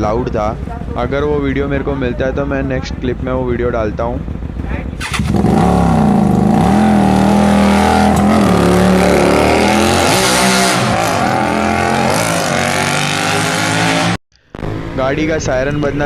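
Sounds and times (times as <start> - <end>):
motorcycle engine revving: 0.0 - 16.0.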